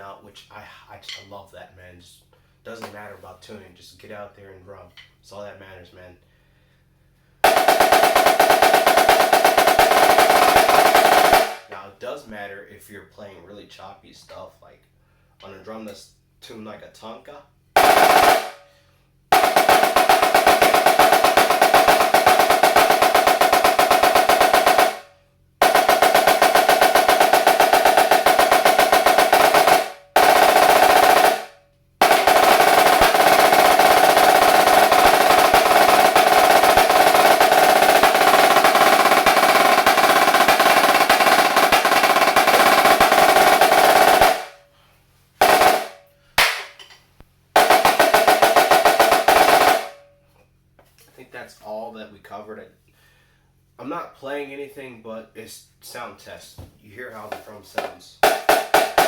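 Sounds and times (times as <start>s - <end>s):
snare drum rolls: 7.4s - 11.8s, 17.8s - 18.6s, 19.3s - 44.6s, 45.4s - 46.8s, 47.6s - 50.0s, 57.3s - 59.0s.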